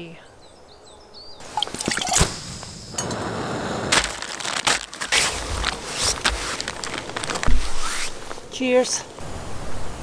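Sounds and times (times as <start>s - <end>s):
packaging crinkling and rustling: 1.6s - 8.6s.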